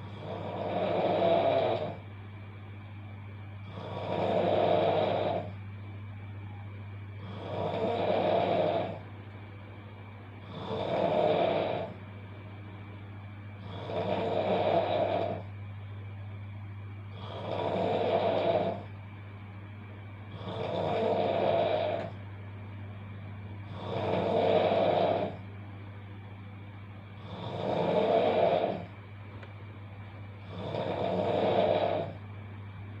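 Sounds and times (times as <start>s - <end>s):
person snoring loudly: 0.0s - 2.0s, 3.6s - 5.6s, 7.2s - 9.0s, 10.4s - 12.0s, 13.6s - 15.5s, 17.1s - 18.9s, 20.3s - 22.2s, 23.6s - 25.4s, 27.2s - 28.9s, 30.4s - 32.2s
steady low hum: 0.0s - 33.0s.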